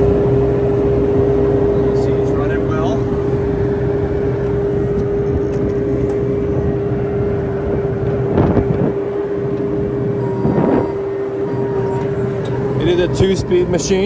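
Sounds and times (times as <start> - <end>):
constant engine whine: 0.0 - 14.0
diesel excavator engine droning: 0.0 - 14.0.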